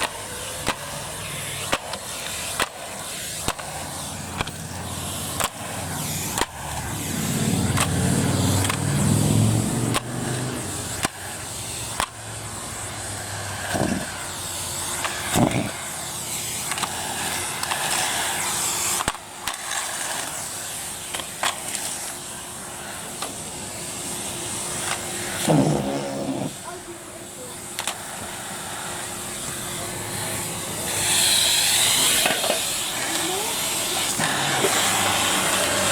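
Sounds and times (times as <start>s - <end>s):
wheels rolling on hard ground: 0.0s - 12.2s, 30.8s - 35.9s
vacuum cleaner running: 0.0s - 35.9s.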